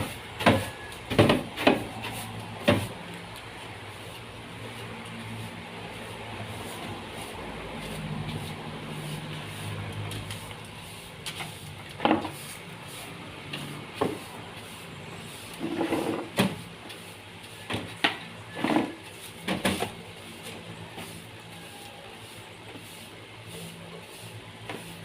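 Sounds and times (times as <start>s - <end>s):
wooden knocks and clunks: 0.4s - 1.8s.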